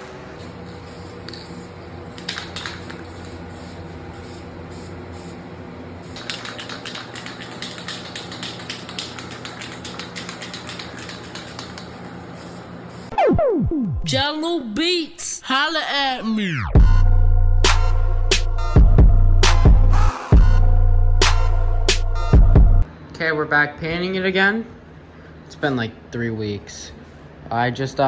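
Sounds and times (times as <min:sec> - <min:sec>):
spray can rattling: 0:00.4 - 0:05.4, 0:06.0 - 0:13.1
spray can spraying: 0:00.4 - 0:05.4, 0:06.0 - 0:13.2.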